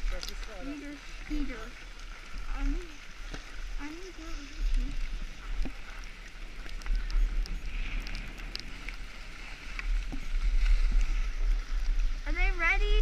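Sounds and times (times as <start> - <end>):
wind buffeting microphone: 0.0 - 13.0
skis sliding on snow: 5.2 - 13.0.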